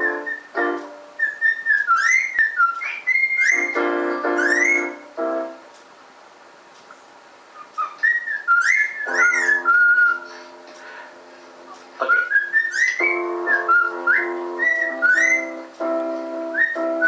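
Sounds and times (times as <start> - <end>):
held music chords: 0.0 - 1.2, 9.1 - 17.0
cockatiel whistling a tune: 0.0 - 5.1, 7.8 - 10.4, 12.1 - 15.7, 16.5 - 17.0.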